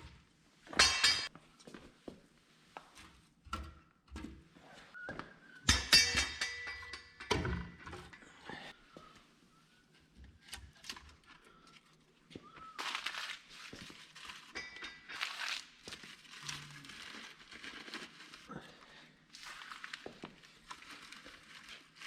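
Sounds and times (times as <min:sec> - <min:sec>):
crinkling and rustling: 0:09.9 - 0:22.0.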